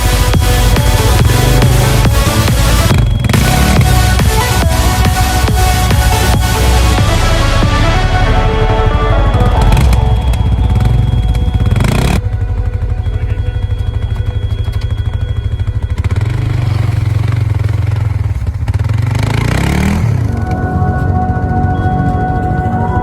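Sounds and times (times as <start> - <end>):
faint music: 0.0 - 17.6
atv engine revving: 0.0 - 23.0.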